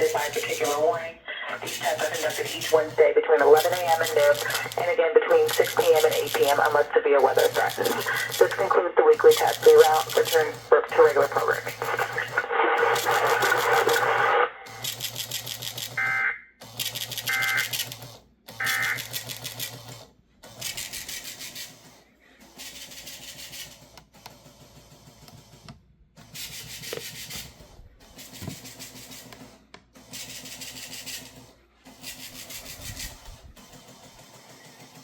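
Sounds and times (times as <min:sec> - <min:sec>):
printer rattling: 0:00.0 - 0:16.0, 0:16.7 - 0:25.6, 0:26.2 - 0:35.0
digital data tone bursts: 0:01.6 - 0:15.0, 0:17.2 - 0:17.8, 0:18.6 - 0:19.2.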